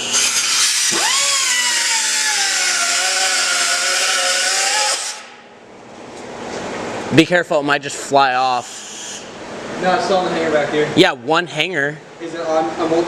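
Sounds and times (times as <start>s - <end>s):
power tool cutting pipe: 0.0s - 5.4s.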